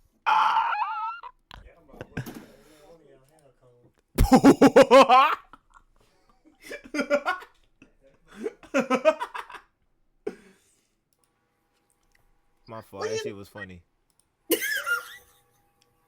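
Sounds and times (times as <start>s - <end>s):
person laughing: 0.3s - 2.4s, 4.2s - 5.8s, 6.6s - 7.5s, 8.4s - 9.6s, 14.5s - 15.3s.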